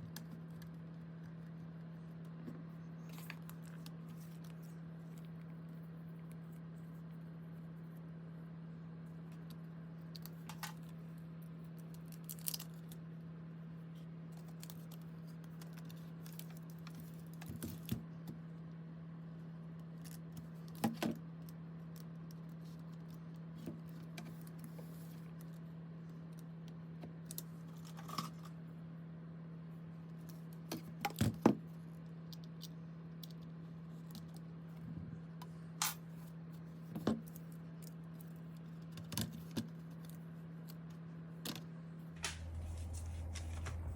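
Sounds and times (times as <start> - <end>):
steady low hum: 31.7 - 38.8, 40.3 - 43.9.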